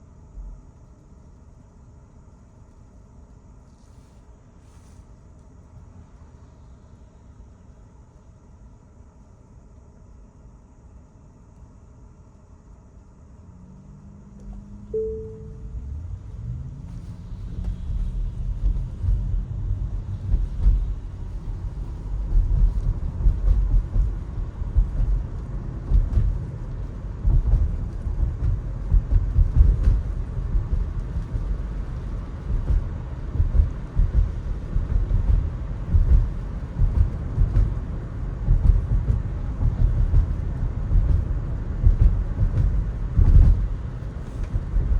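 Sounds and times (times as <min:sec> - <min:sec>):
car road rumble: 0:13.0 - 0:44.9
brief tone: 0:14.5 - 0:16.0.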